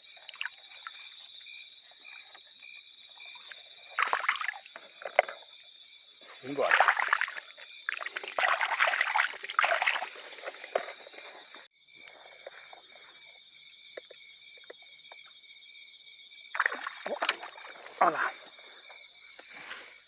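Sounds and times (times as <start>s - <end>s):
water splashing and sloshing: 0.0s - 1.4s, 3.0s - 5.5s, 6.3s - 11.7s, 16.5s - 18.8s
night insects chorus: 0.0s - 20.0s.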